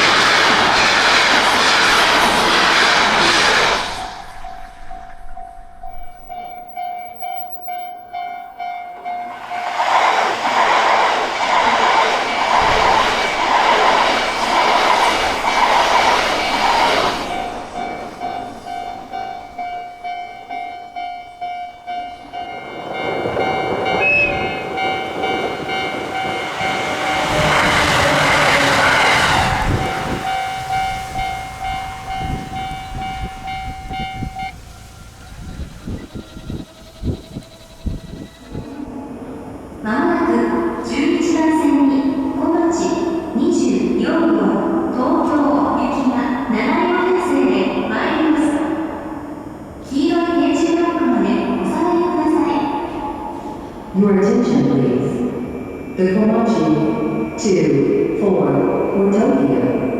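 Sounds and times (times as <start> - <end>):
train rushing past: 0.0 - 59.9
level crossing warning bell: 4.0 - 10.0, 17.2 - 49.0, 49.8 - 59.9.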